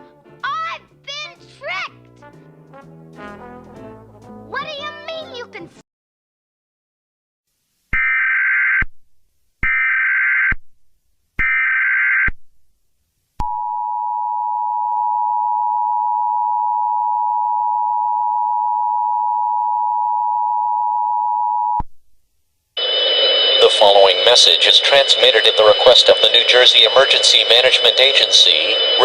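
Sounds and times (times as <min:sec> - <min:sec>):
two-tone attention signal: 0:22.8 - 0:29.0
warbling digital data tones: 0:22.8 - 0:29.0.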